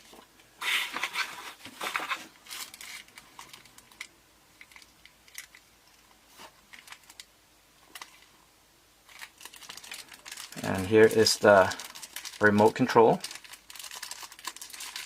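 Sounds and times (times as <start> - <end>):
cardboard box and paper handled: 0.0 - 3.0.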